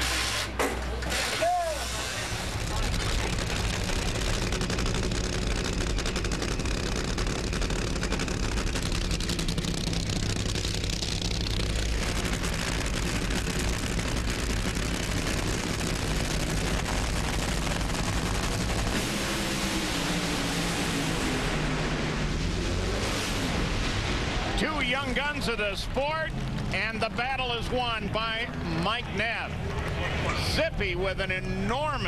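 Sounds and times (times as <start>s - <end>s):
drag racing engines crackling: 0.0s - 32.0s.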